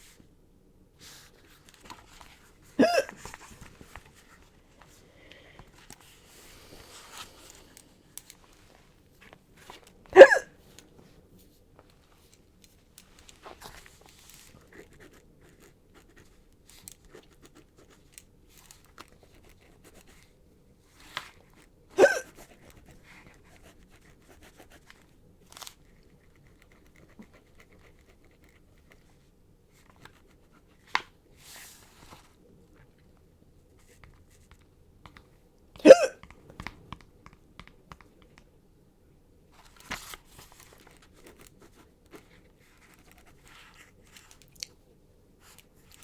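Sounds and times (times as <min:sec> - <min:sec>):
woman hiccuping: 0:02.8 - 0:03.2, 0:10.1 - 0:10.5, 0:22.0 - 0:22.3, 0:35.8 - 0:36.2.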